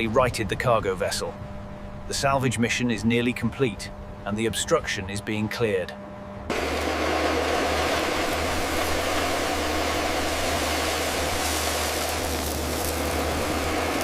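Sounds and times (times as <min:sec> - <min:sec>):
motor hum: 0:00.0 - 0:14.0
loud even hiss: 0:06.5 - 0:14.0.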